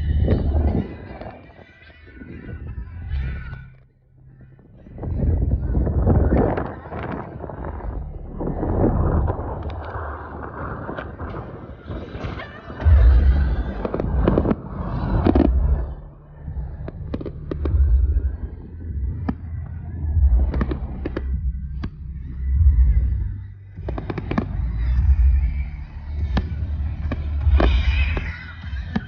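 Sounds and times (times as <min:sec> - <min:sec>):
fireworks booming: 0:05.1 - 0:29.0
fireworks crackling: 0:06.2 - 0:17.8, 0:20.4 - 0:22.0, 0:23.8 - 0:25.4, 0:26.0 - 0:29.0.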